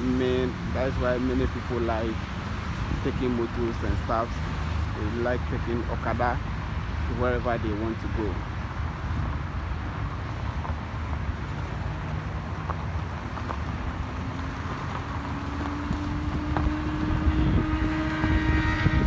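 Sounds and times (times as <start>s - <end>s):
road traffic rumble: 0.0s - 19.0s
vehicle engine drone: 0.0s - 19.0s.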